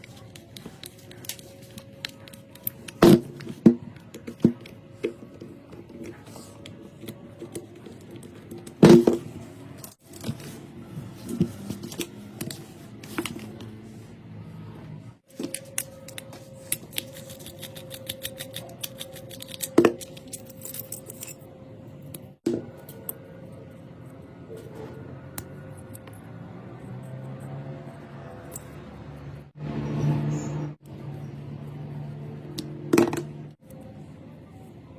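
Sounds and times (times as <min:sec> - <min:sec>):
hand tools and metal parts clinking: 0:15.4 - 0:21.5.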